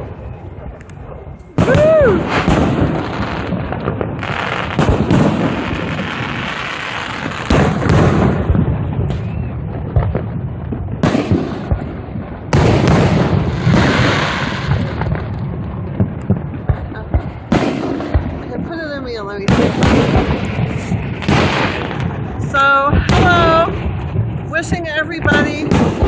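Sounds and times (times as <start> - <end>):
firework shells booming: 0.0 - 26.0
fireworks crackling: 0.0 - 26.0.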